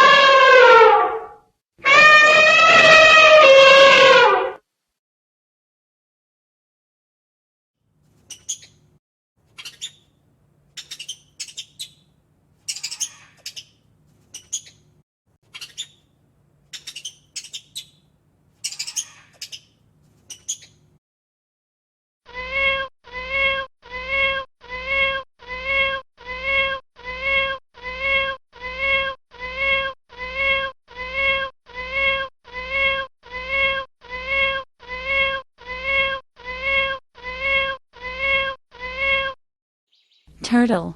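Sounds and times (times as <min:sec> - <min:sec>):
cat meowing: 0:01.8 - 0:04.6, 0:22.3 - 0:39.4
high chirps or squeaks: 0:08.2 - 0:08.9, 0:09.5 - 0:14.9, 0:15.5 - 0:20.9.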